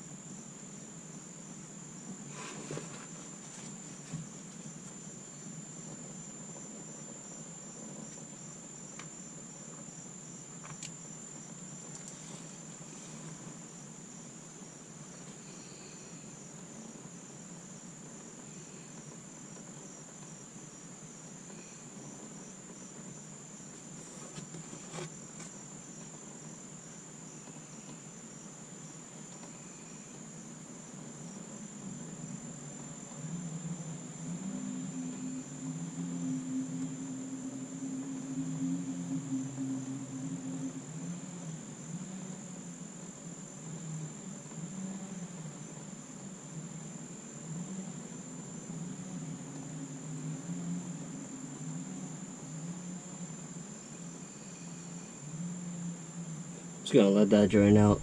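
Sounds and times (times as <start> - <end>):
crickets trilling: 0.0 - 58.0.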